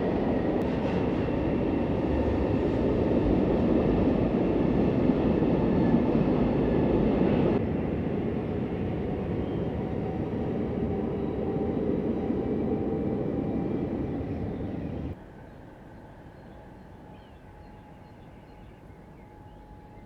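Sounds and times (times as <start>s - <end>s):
train rumbling on track: 0.0s - 15.5s.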